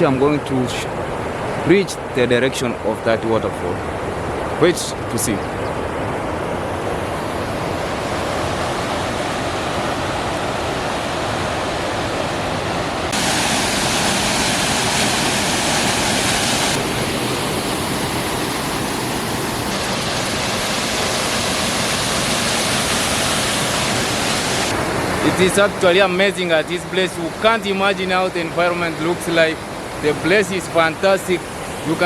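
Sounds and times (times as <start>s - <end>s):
waterfall rushing: 6.4s - 32.0s.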